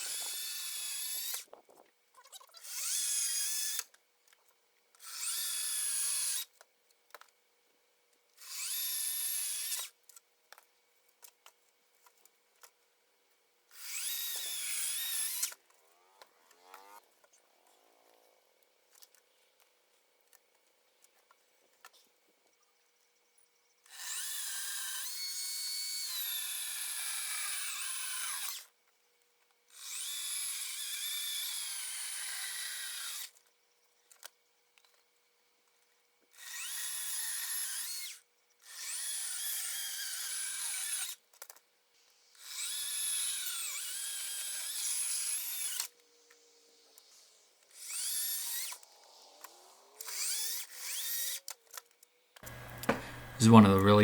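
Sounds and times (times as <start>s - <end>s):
electric chainsaw whining: 0.0s - 1.5s, 13.8s - 17.1s, 42.3s - 51.6s, 52.4s - 53.6s.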